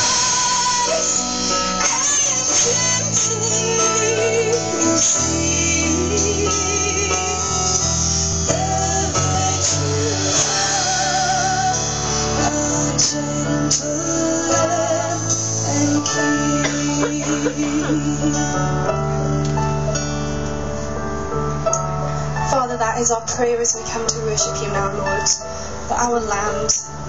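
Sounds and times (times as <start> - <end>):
voices singing worship music: 0.0 - 19.0
sustained low bass notes: 0.0 - 25.2
guitar: 0.0 - 27.0.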